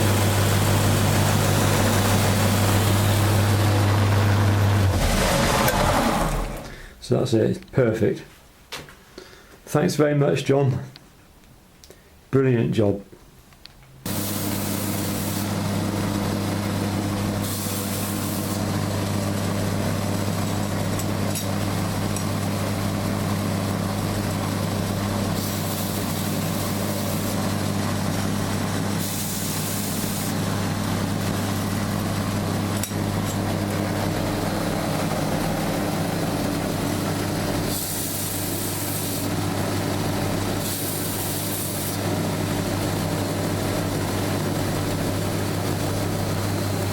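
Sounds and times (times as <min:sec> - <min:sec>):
loud high hiss: 0:00.0 - 0:05.6, 0:14.1 - 0:15.8, 0:17.0 - 0:18.8, 0:25.3 - 0:27.7, 0:28.8 - 0:30.6, 0:34.2 - 0:43.3
belt grinder running: 0:00.0 - 0:06.7, 0:14.1 - 0:46.9.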